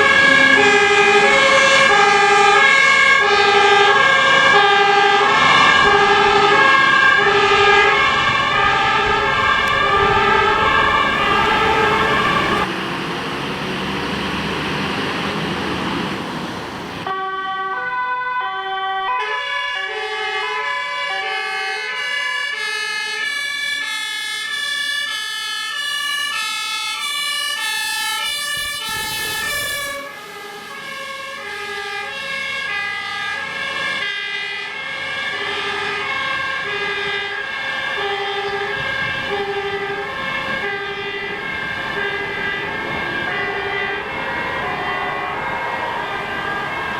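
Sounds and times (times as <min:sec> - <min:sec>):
two-tone fire sirens: 0:00.0 - 0:15.4, 0:16.7 - 0:46.9
vehicle engine and road noise: 0:00.0 - 0:17.1, 0:38.7 - 0:46.9.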